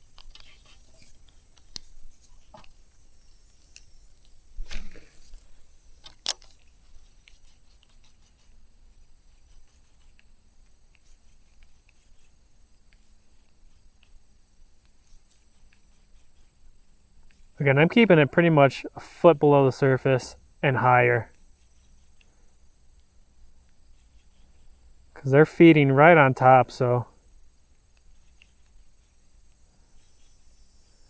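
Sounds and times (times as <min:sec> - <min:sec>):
fishing rod swish: 0:04.6 - 0:05.6.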